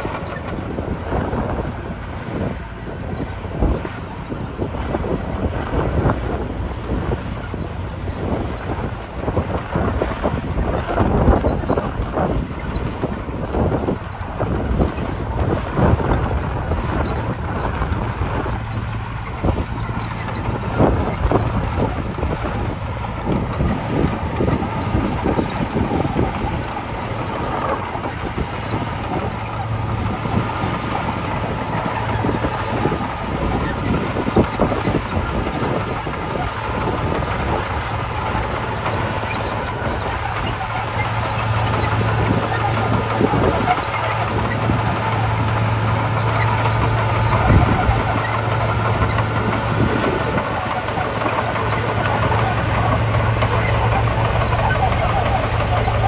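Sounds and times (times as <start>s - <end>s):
bulldozer diesel engine running: 0.0s - 56.0s
steel tracks clanking: 0.0s - 56.0s.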